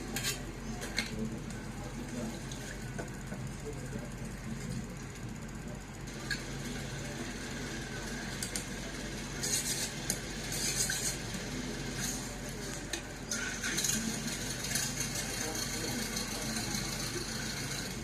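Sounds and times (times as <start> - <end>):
metal spatula scraping a wok: 9.4 - 9.9.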